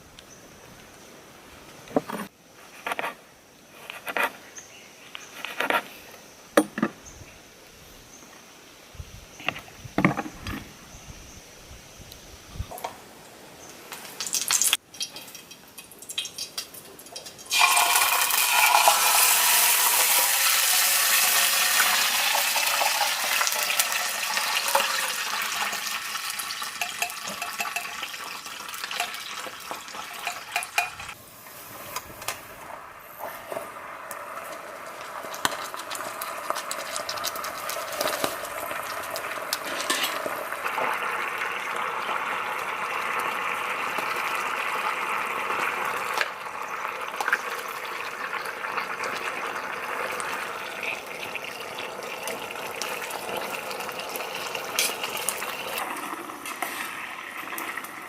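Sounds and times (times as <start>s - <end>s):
food sizzling in a pan: 17.2s - 31.6s, 33.2s - 58.0s.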